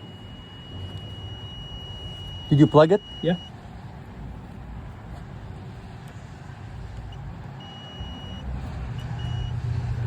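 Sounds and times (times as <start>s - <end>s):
short electronic beeps: 0.0s - 3.5s, 7.1s - 9.6s
low engine-like rumble: 0.0s - 10.0s.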